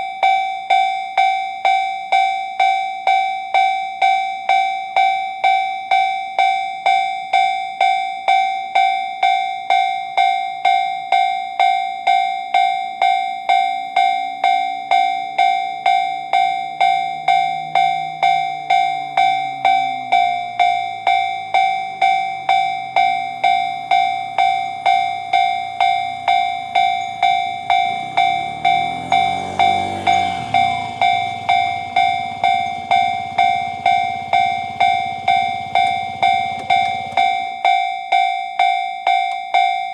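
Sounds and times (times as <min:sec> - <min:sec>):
level-crossing alarm bell: 0:00.0 - 0:39.9
electric train passing: 0:16.7 - 0:37.4.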